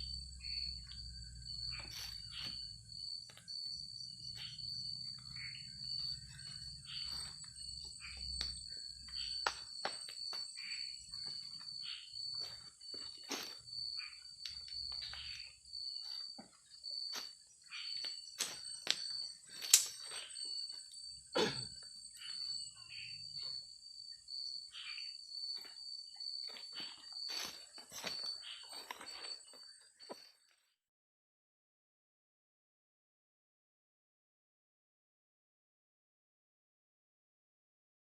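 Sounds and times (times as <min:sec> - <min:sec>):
forest insects chorus: 0:00.0 - 0:30.5.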